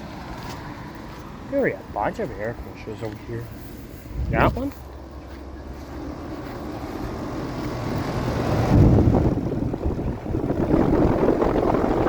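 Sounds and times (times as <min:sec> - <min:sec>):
air conditioner fan whirring: 0:04.0 - 0:12.0.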